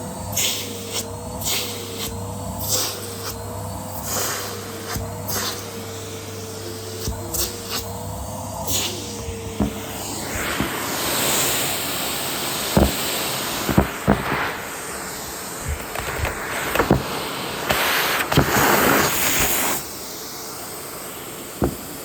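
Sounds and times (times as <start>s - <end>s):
vacuum cleaner motor whining: 0.0s - 22.0s
sharp knocks: 12.8s - 13.1s, 13.7s - 14.6s, 21.6s - 21.8s.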